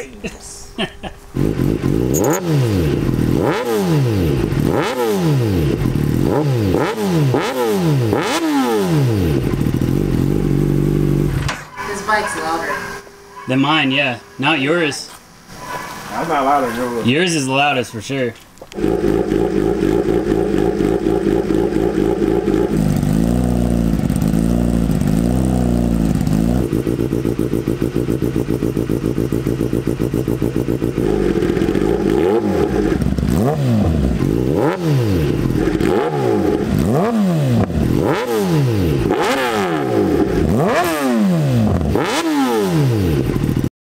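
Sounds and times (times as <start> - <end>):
motorcycle engine idling: 1.2 - 11.5, 18.7 - 36.9, 43.2 - 43.7
motorcycle engine revving: 1.2 - 17.2, 18.7 - 43.7.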